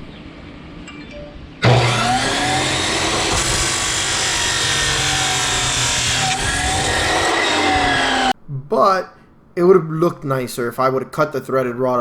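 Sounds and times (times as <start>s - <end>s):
power tool running under load: 1.6s - 8.4s.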